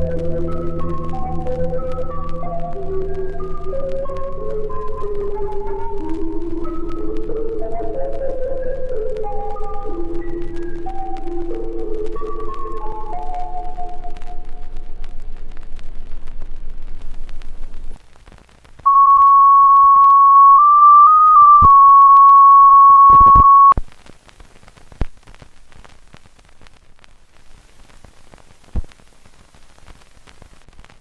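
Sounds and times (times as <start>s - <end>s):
electronic test tone: 0.0s - 14.3s, 18.9s - 23.8s
background music: 0.0s - 14.7s
faint crackling static: 0.0s - 31.0s.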